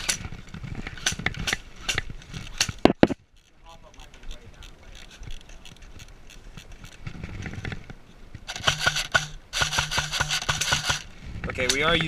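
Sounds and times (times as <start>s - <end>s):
airsoft gun clicking rapidly: 8.5s - 12.0s.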